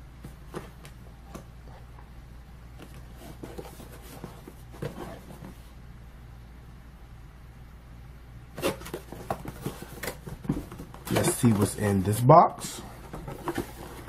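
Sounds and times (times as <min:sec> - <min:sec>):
steady low hum: 0:00.0 - 0:14.0
box taps and rustles: 0:02.8 - 0:05.6, 0:08.6 - 0:11.8, 0:13.0 - 0:14.0.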